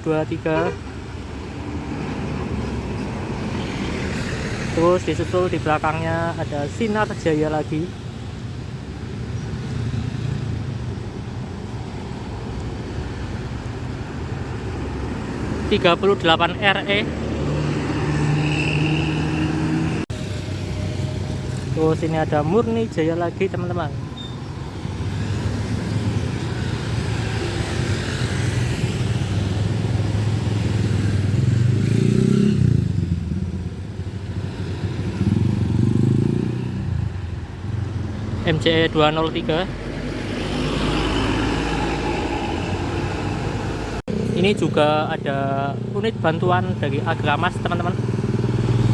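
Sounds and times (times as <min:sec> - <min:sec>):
road noise: 0:00.0 - 0:48.9
bus diesel engine passing: 0:12.2 - 0:48.9.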